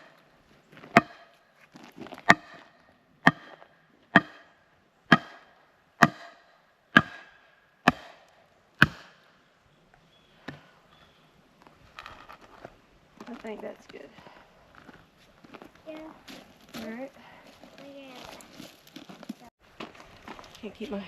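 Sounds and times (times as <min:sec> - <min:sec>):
hammer striking post: 0:00.9 - 0:01.4, 0:02.3 - 0:09.3.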